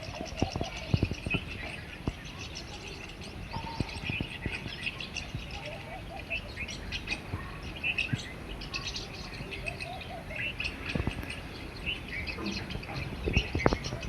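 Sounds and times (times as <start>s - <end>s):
small songbirds chirping: 0.0s - 14.0s.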